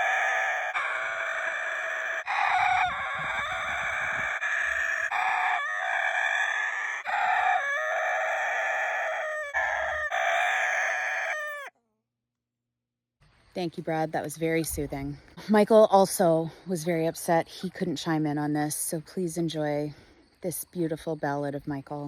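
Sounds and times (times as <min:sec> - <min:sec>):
rooster crowing: 0:00.0 - 0:11.8.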